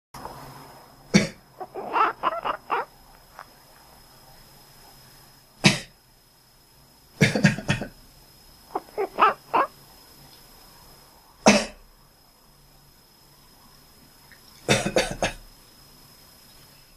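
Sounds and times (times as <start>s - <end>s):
person coughing: 1.2s - 1.4s, 5.6s - 5.9s, 7.2s - 7.9s, 11.5s - 11.8s, 14.7s - 15.4s
cat making quacking calls: 1.6s - 2.9s, 8.7s - 9.7s.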